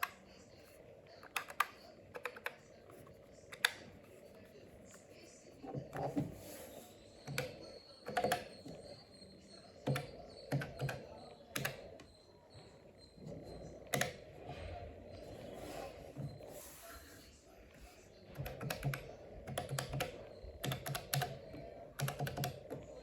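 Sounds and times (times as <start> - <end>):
mechanical calculator keys clacking: 9.8 - 12.0, 18.3 - 23.0.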